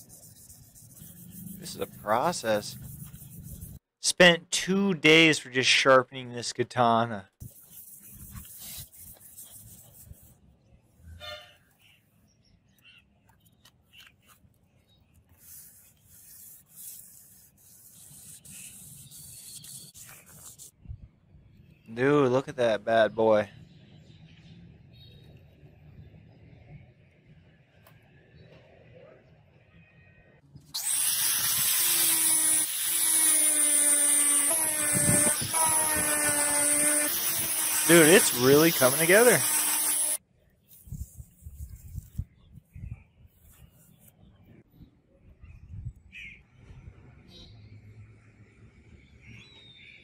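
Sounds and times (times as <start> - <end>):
electric grinder whining: 30.8 - 40.2.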